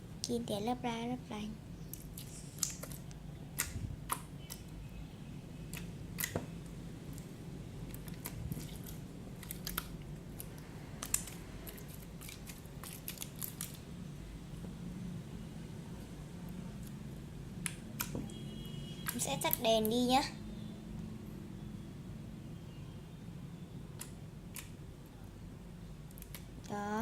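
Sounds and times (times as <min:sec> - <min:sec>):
slime clicking and popping: 0:01.9 - 0:04.7, 0:05.7 - 0:06.5, 0:07.9 - 0:13.8, 0:19.0 - 0:20.0, 0:26.1 - 0:26.8.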